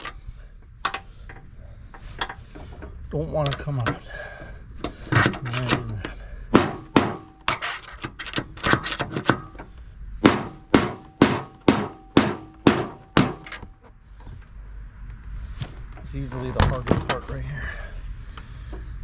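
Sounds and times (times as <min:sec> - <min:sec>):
hammer striking metal: 0:06.5 - 0:07.6, 0:10.2 - 0:13.6.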